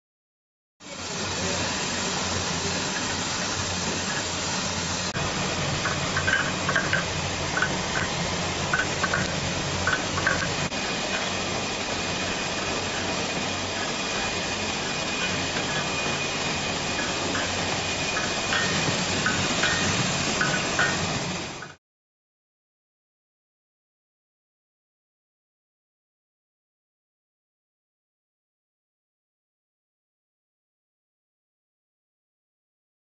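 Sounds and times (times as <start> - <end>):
machine humming and hissing: 0.8 - 21.8.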